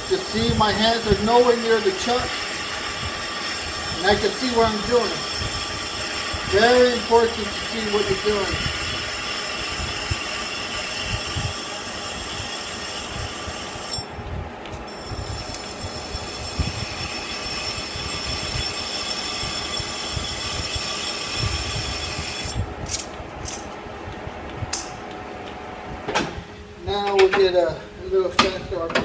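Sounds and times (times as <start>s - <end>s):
lathe cutting steel whine: 0.0s - 23.0s.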